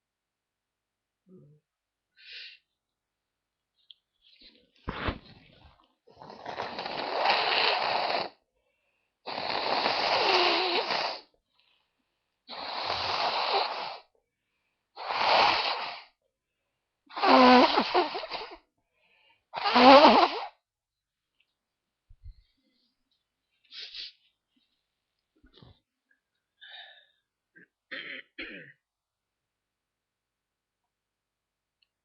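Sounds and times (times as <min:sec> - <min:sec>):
person blowing nose: 0:04.9 - 0:05.4, 0:06.2 - 0:08.4, 0:09.3 - 0:11.3, 0:12.5 - 0:14.1, 0:15.0 - 0:16.2, 0:17.1 - 0:18.6, 0:19.5 - 0:20.6, 0:23.7 - 0:24.2.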